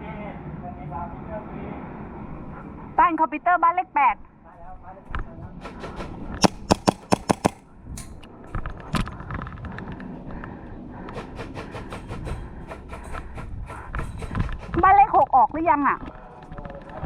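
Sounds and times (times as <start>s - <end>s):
airsoft guns firing: 6.4s - 7.6s.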